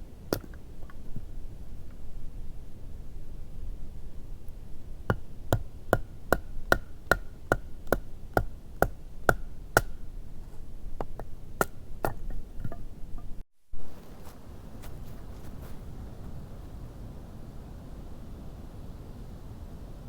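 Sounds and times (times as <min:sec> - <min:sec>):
axe chopping wood: 0:00.3 - 0:00.6, 0:05.1 - 0:10.0.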